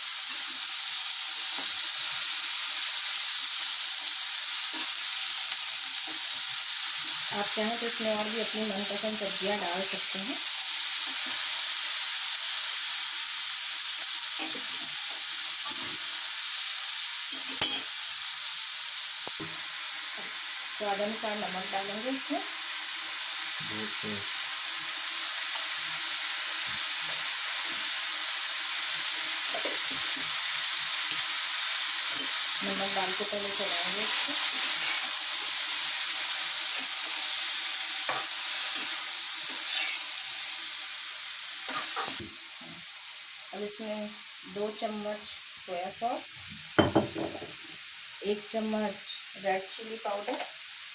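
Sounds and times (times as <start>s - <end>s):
vegetables sizzling in hot oil: 0.0s - 50.9s
utensil scraping vegetables: 38.1s - 40.1s.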